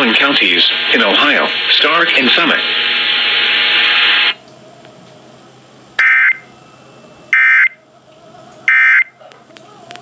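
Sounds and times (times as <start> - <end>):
loud radio static: 0.0 - 4.4.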